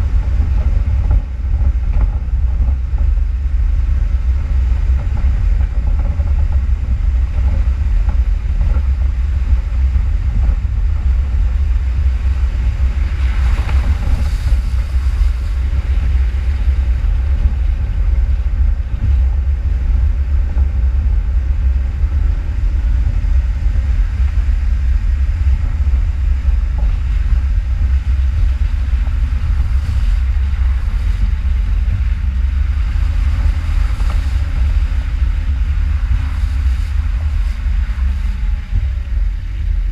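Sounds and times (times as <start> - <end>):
off-road vehicle rumbling: 0.0 - 39.9.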